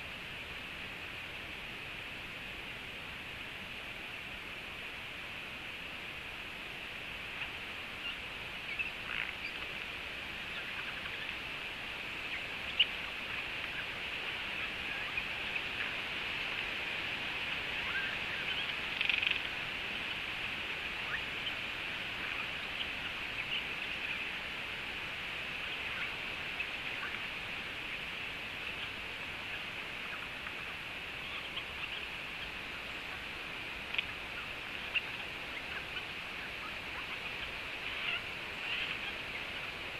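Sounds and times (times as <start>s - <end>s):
steady hiss: 0.0s - 39.9s
jay calls and clicks: 18.9s - 19.6s.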